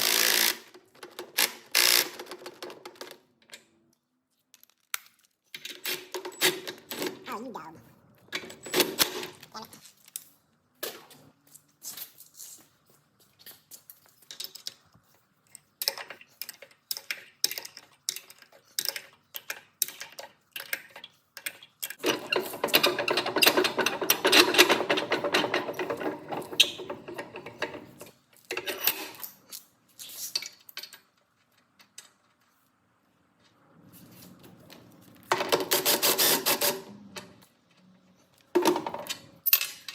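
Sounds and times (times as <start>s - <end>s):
metal tools clicking and clattering: 15.5s - 31.2s, 38.6s - 39.9s
rapid rattling and scraping: 22.0s - 29.2s.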